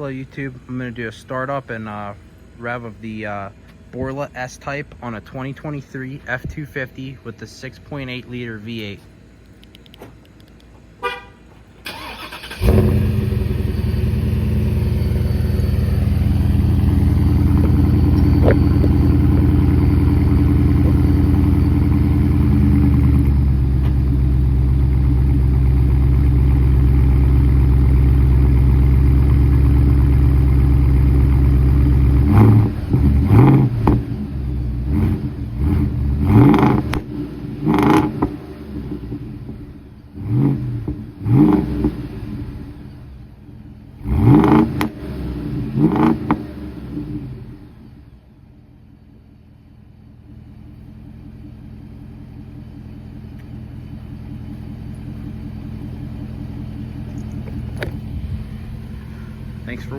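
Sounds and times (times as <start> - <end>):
truck engine idling: 0.0 - 36.2, 47.7 - 59.9
truck engine starting: 11.6 - 59.9
engine revving in short blips: 11.8 - 24.2, 31.6 - 39.6, 40.2 - 43.0, 44.0 - 47.9.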